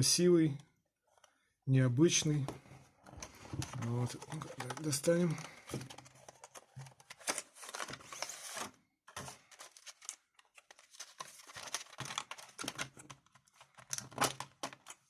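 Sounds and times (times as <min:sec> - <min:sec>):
packaging rustling and crinkling: 0:03.0 - 0:15.0.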